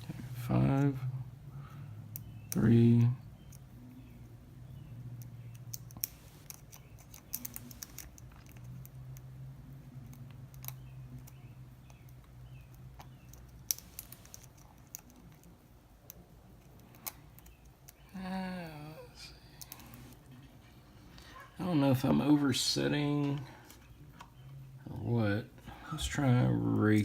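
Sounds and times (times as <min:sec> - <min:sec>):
lock pick clicking and scraping: 0:05.2 - 0:08.9, 0:13.0 - 0:15.5
person humming: 0:18.1 - 0:20.0.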